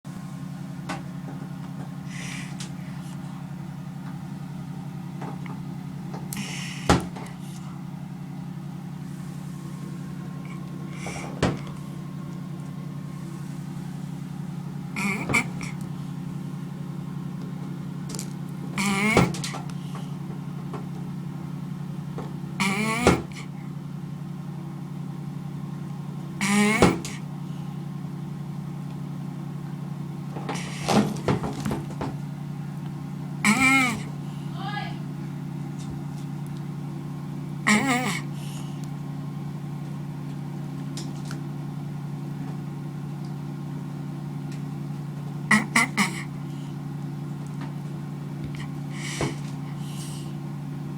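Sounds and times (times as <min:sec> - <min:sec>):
steady low hum: 0:00.1 - 0:50.9
tortoise mating call: 0:14.8 - 0:16.2, 0:18.7 - 0:20.2, 0:22.6 - 0:23.7, 0:26.4 - 0:27.7, 0:33.4 - 0:35.0, 0:37.6 - 0:38.9, 0:45.4 - 0:46.8
tortoise calling: 0:14.9 - 0:16.1, 0:18.8 - 0:19.6, 0:33.4 - 0:35.1.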